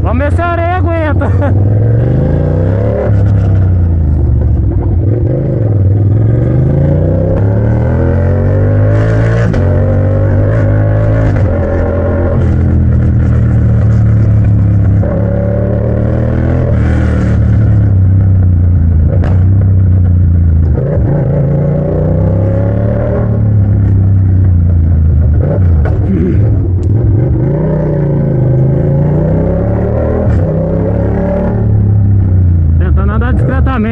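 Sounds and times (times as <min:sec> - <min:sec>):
motorcycle engine revving: 0:00.0 - 0:33.9
exhaust cracks: 0:16.7 - 0:21.2, 0:23.5 - 0:27.5.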